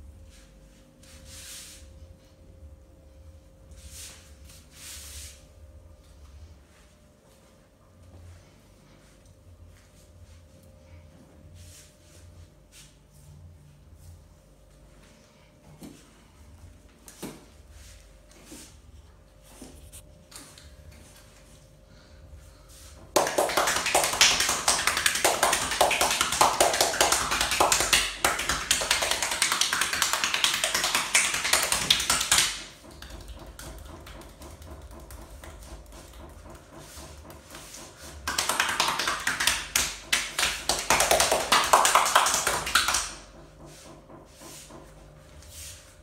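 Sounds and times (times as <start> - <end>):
hands slapping on body: 23.2 - 36.6, 37.2 - 43.2.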